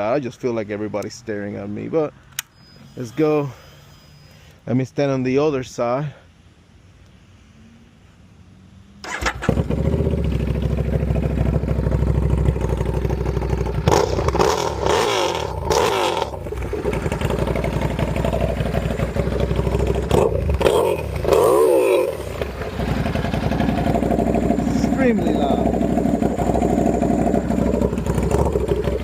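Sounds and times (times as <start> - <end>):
motorcycle engine starting and idling: 9.0 - 29.0
throttle revs: 9.0 - 29.0.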